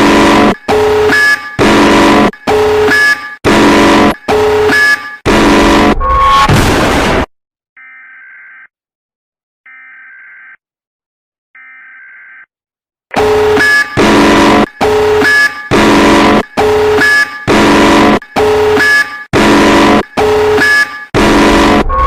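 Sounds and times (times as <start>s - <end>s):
harsh distorted alarm blaring: 0.0s - 8.7s, 13.1s - 22.0s.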